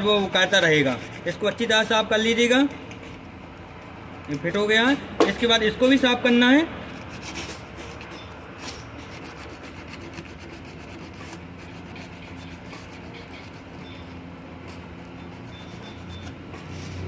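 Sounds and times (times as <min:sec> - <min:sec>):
rapid rubbing strokes: 0:00.0 - 0:01.6, 0:06.9 - 0:14.3, 0:15.2 - 0:17.0.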